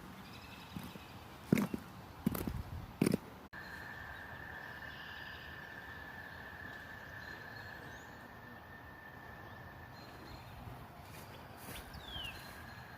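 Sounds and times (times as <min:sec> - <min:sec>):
faint outdoor background noise: 0:00.0 - 0:12.9.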